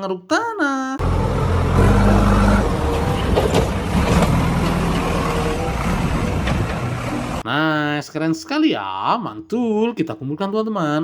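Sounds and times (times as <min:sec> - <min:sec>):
excavator engine humming: 0:01.0 - 0:07.4.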